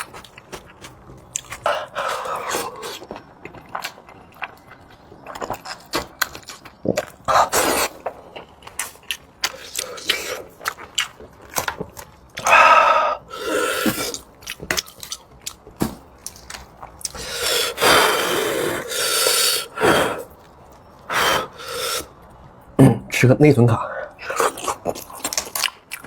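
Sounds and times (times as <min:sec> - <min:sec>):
chewing clicks and smacks: 0:00.0 - 0:01.8, 0:14.1 - 0:15.6, 0:24.4 - 0:26.0.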